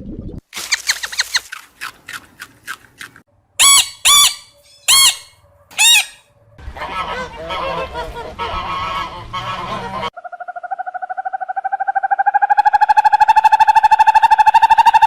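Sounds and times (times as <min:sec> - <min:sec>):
farm bird calling: 0:03.6 - 0:06.2.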